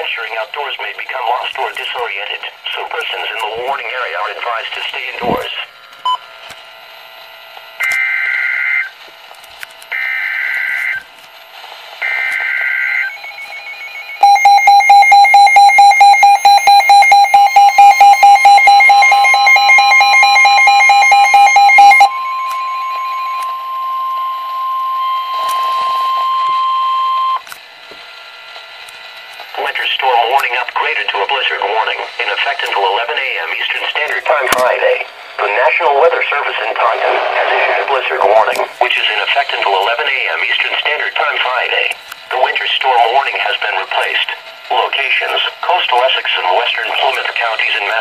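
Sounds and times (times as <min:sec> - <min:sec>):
rapidly pulsing electronic beeping alarm: 0:06.9 - 0:09.0, 0:09.9 - 0:11.0, 0:12.0 - 0:27.4
steady warning alarm tone: 0:06.9 - 0:09.0, 0:09.9 - 0:11.1, 0:12.0 - 0:27.5, 0:28.2 - 0:34.0
digital data warble: 0:12.0 - 0:27.4.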